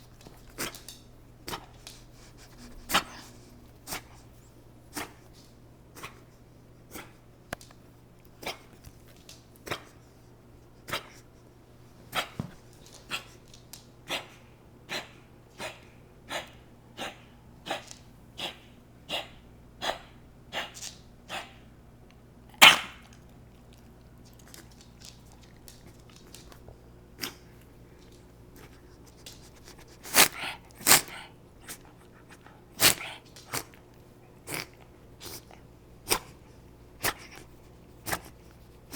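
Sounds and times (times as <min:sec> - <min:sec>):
dog coughing and wheezing: 0:30.0 - 0:33.7.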